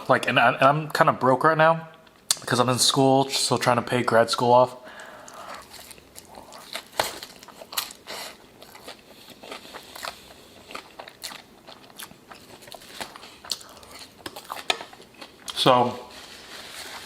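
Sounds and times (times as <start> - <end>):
crunchy food being chewed: 5.2 - 15.7.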